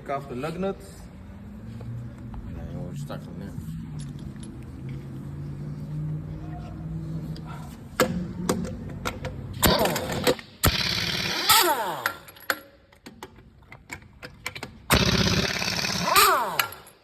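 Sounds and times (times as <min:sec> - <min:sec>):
impact wrench hammering: 0:08.0 - 0:13.1, 0:14.5 - 0:17.0.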